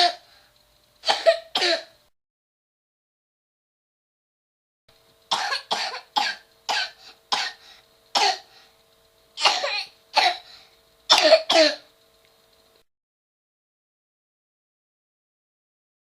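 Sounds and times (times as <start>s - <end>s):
child barking cough: 0.0s - 0.2s, 1.0s - 1.9s, 5.3s - 7.6s, 8.2s - 8.5s, 9.4s - 10.5s, 11.1s - 11.9s.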